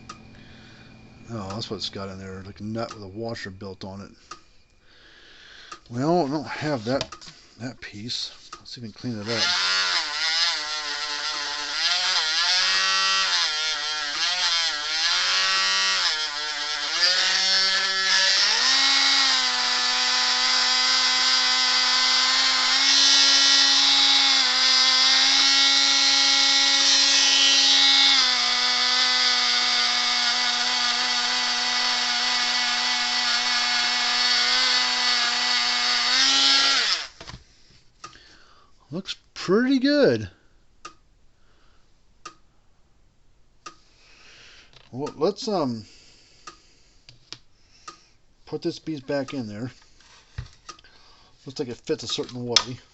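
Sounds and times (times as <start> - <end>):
high-speed electric tool whining: 9.1 - 37.3.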